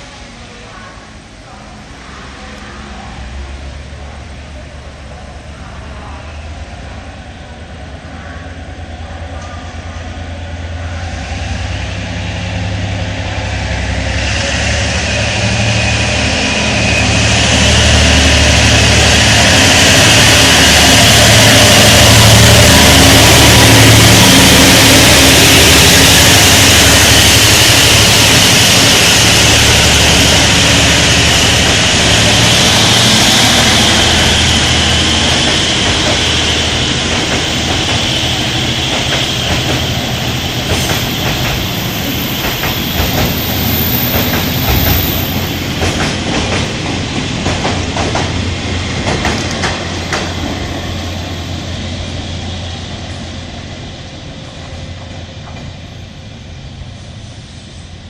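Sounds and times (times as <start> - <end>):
train wheels rumbling on rail: 0.0 - 58.0
clacks over rail joints: 45.8 - 50.6.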